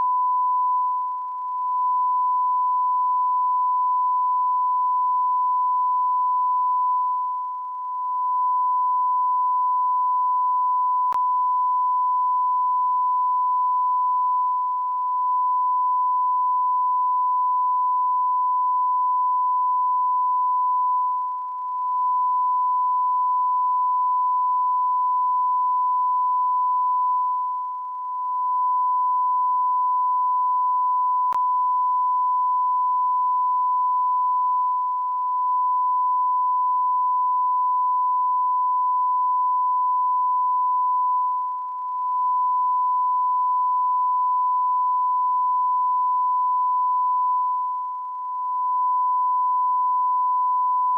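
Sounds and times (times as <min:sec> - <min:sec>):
continuous electronic beep: 0:27.2 - 0:28.7, 0:41.2 - 0:42.6, 0:47.3 - 0:49.2.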